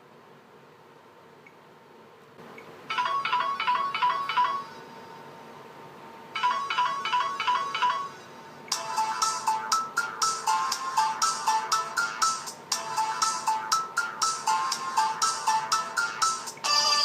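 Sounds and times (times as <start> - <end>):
electronic two-note ringtone chirps: 16.2 - 17.0.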